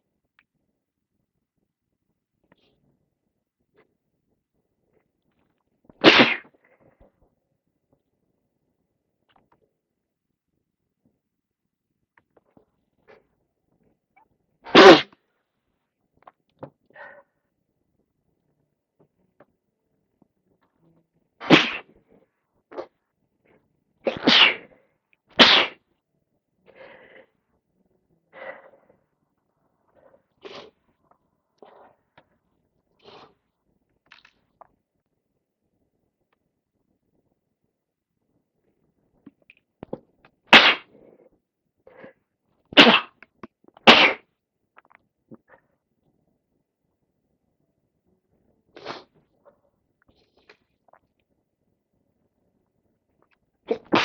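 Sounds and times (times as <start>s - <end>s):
person sneezing: 6.0s - 6.5s, 14.7s - 15.2s, 21.4s - 21.8s, 24.1s - 24.7s, 25.4s - 25.8s, 40.5s - 40.8s, 42.8s - 43.2s, 43.8s - 44.2s, 48.8s - 49.1s, 53.7s - 54.0s
person sniffing: 6.0s - 6.5s, 14.7s - 15.1s, 21.4s - 21.8s, 24.1s - 24.8s, 25.4s - 25.8s, 28.4s - 28.8s, 30.0s - 30.7s, 40.5s - 40.8s, 42.8s - 43.1s, 43.9s - 44.2s, 48.8s - 49.1s, 53.7s - 54.0s.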